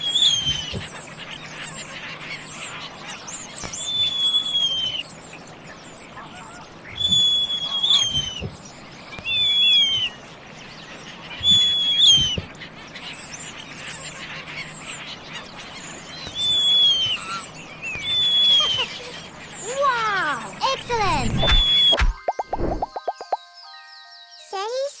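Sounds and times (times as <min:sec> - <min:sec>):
tern calling: 0:16.3 - 0:23.4.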